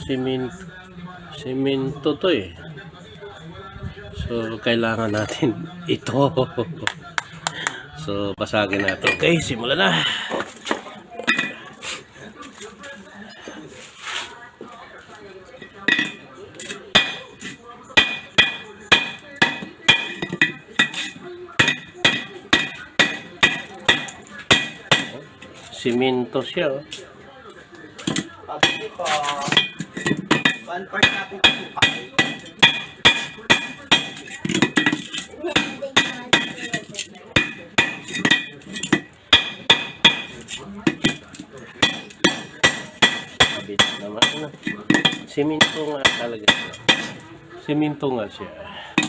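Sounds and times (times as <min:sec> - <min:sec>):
hammer striking cement: 0:18.0 - 0:25.2, 0:28.1 - 0:47.2.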